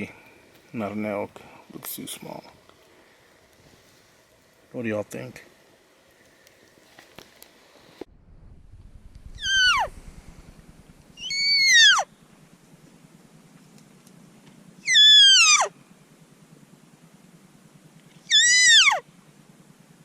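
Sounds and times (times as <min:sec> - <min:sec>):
elk mewing: 0:09.4 - 0:12.1, 0:18.3 - 0:19.0.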